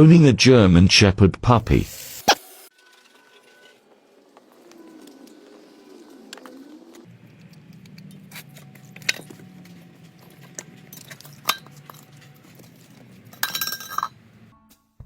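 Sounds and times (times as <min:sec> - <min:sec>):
metallic jangling: 0:10.0 - 0:14.2
sharp metallic clicks and clinks: 0:10.2 - 0:14.2.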